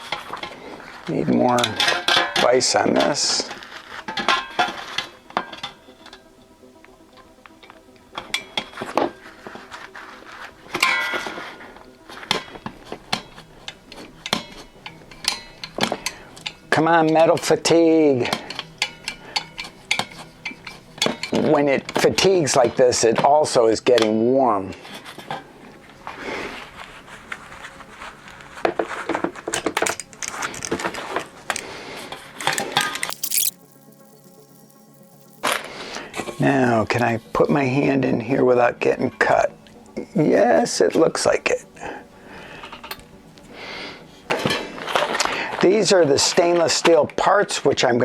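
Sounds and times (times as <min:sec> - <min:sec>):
metal sheet clicking and clinking: 0:32.6 - 0:35.4.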